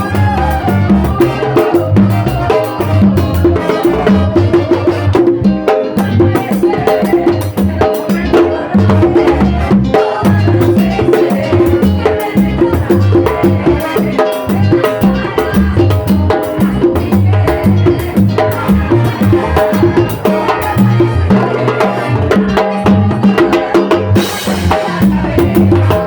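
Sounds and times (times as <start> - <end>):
tropical dance music: 0.0 - 26.0.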